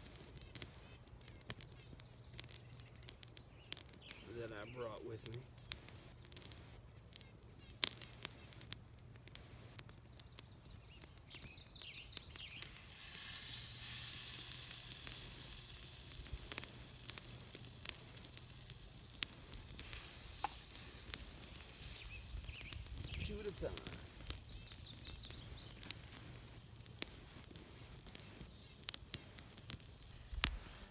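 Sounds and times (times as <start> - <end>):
campfire clicks and crackles: 0.0 - 30.9
bacon sizzling in a pan: 10.8 - 30.9.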